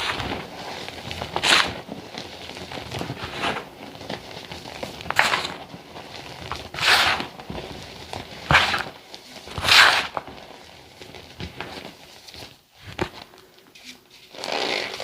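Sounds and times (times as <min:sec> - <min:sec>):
chalk and sand crunching: 0:00.0 - 0:01.9, 0:02.6 - 0:03.7, 0:04.4 - 0:10.3
soft crumbling rustle: 0:00.0 - 0:15.0.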